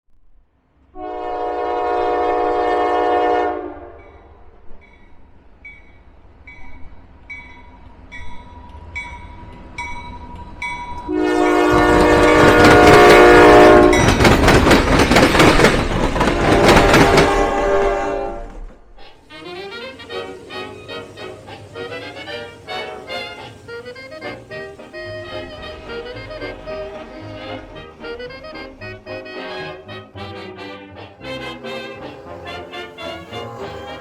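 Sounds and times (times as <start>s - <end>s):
train rumbling on rails: 0.1s - 34.0s
locomotive horn blast: 0.9s - 4.3s, 11.1s - 14.5s, 16.2s - 34.0s.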